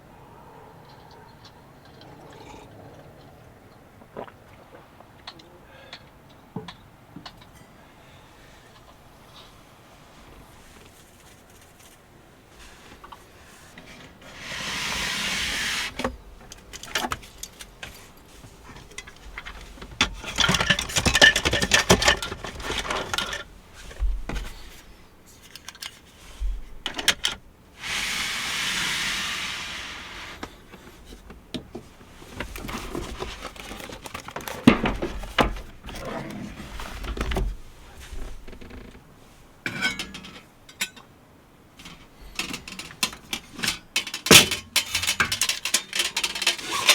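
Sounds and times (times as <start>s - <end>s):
steady hissing: 12.6s - 16.3s, 27.8s - 31.2s
objects clinking and scraping: 13.8s - 24.0s, 39.7s - 41.1s, 41.8s - 46.9s.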